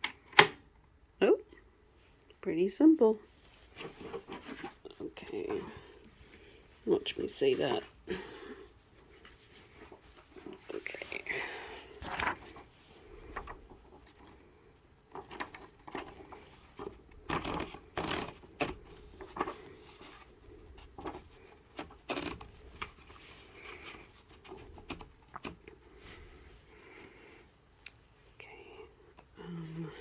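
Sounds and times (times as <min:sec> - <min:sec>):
typewriter being handled: 0:15.1 - 0:19.6, 0:21.0 - 0:23.0.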